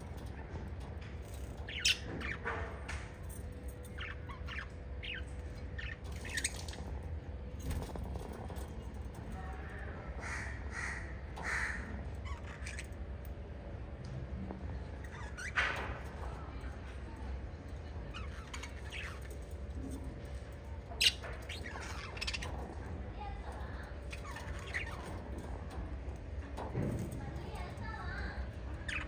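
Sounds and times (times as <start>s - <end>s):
parrots chirping and squawking: 0.0s - 13.0s, 15.0s - 16.4s, 18.0s - 22.9s, 23.5s - 25.8s, 27.6s - 29.0s.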